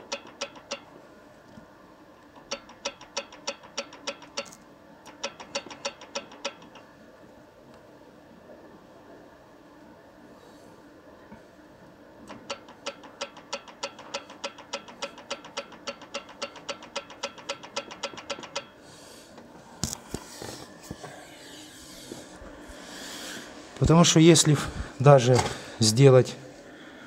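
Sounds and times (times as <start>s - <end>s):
rapid metallic clicks: 0.0s - 0.9s, 2.2s - 6.9s, 12.3s - 18.8s.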